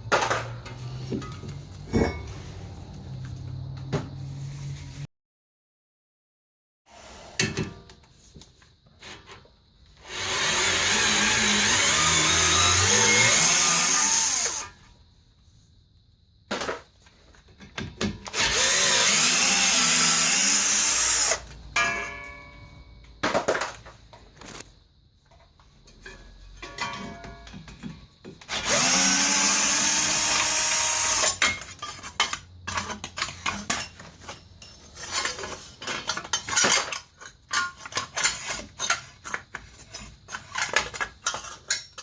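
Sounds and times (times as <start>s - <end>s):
power drill running: 10.0s - 14.6s, 18.3s - 21.4s, 28.5s - 31.4s.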